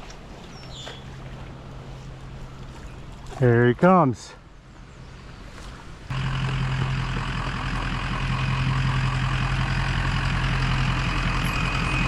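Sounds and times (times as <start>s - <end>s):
truck engine idling: 6.1s - 12.0s.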